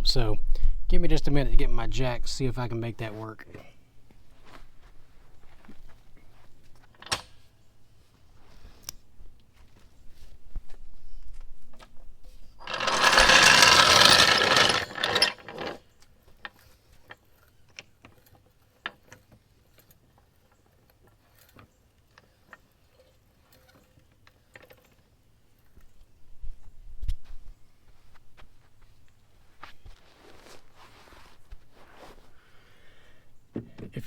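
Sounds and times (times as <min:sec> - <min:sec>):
floor jack clattering: 0:12.6 - 0:15.8.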